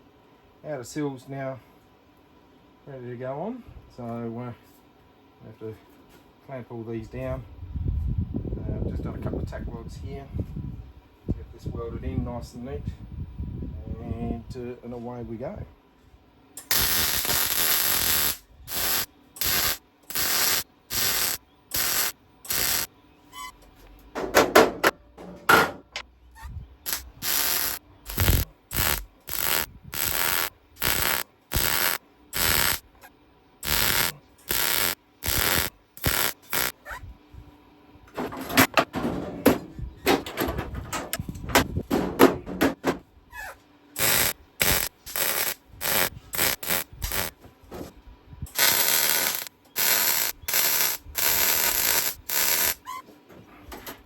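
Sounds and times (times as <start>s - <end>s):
welding crackling bursts: 16.6s - 22.9s, 26.8s - 32.9s, 33.6s - 36.8s, 44.0s - 47.4s, 48.5s - 52.9s.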